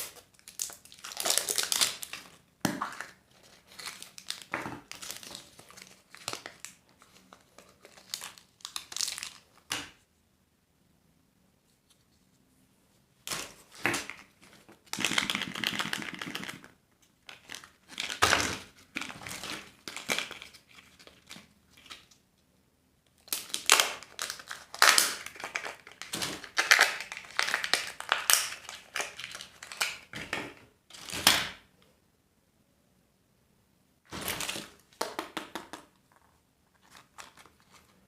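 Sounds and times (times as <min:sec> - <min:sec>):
candy wrapper crackling: 0:00.0 - 0:10.0, 0:13.3 - 0:22.1, 0:23.2 - 0:30.2, 0:34.3 - 0:38.0.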